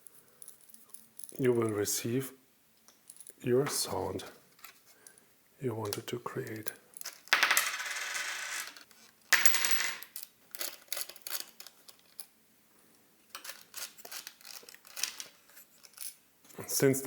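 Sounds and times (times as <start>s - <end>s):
metal keys clinking and rattling: 0.4s - 1.4s, 9.9s - 12.3s, 13.4s - 16.2s.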